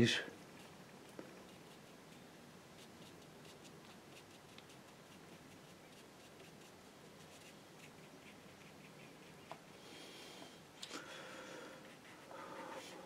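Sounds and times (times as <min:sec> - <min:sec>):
low room hiss: 0:00.0 - 0:13.0
paintbrush dabbing on paper: 0:00.6 - 0:09.7.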